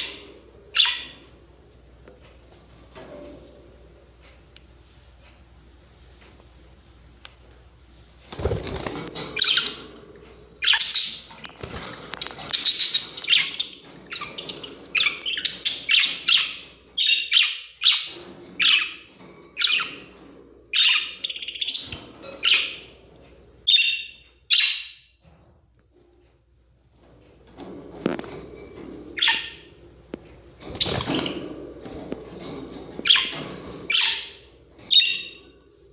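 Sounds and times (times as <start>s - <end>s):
parrots chirping and squawking: 0.0s - 1.3s, 8.7s - 25.0s, 28.1s - 29.7s, 30.6s - 35.5s.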